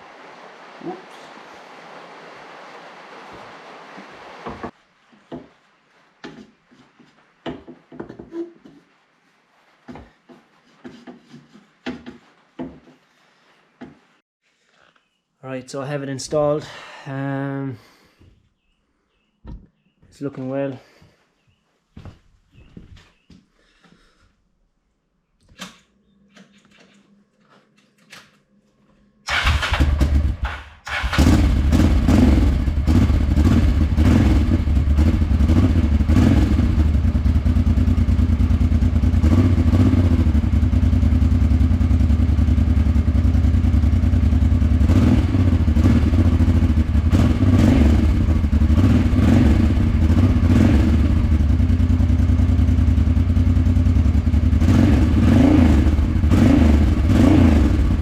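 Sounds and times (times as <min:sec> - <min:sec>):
motorcycle engine running: 0:29.3 - 0:58.0.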